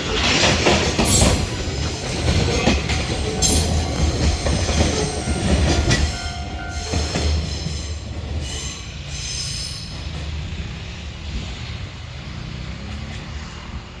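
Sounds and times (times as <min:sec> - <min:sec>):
freight train rumbling past: 0:00.0 - 0:14.0
high wheel squeal: 0:00.2 - 0:10.5.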